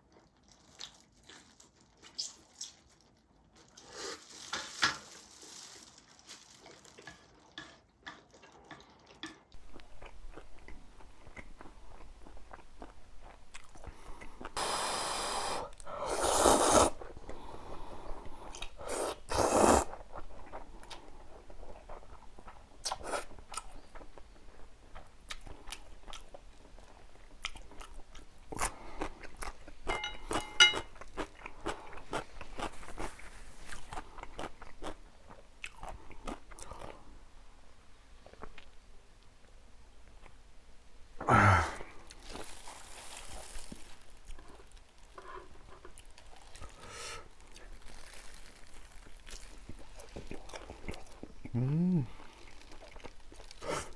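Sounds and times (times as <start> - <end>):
chewing and biting food: 0.0 - 3.9, 6.5 - 14.6, 18.4 - 37.0, 44.2 - 53.9.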